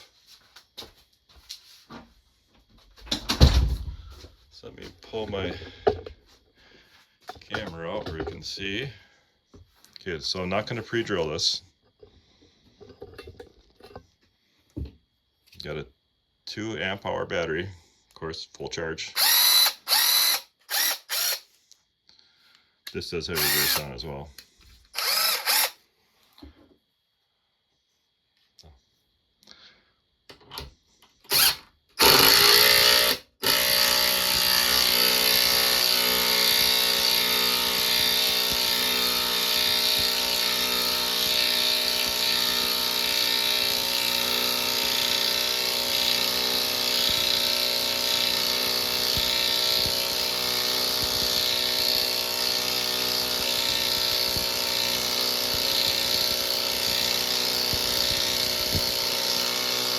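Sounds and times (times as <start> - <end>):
impact wrench whining: 19.2 - 21.5, 23.4 - 24.0, 24.9 - 25.8, 31.2 - 59.9.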